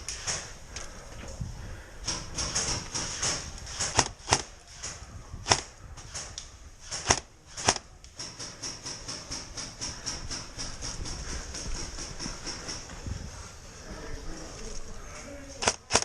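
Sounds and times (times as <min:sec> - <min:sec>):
continuous rustling: 0:00.0 - 0:16.0
airsoft gun shots: 0:02.4 - 0:07.9, 0:15.6 - 0:16.0.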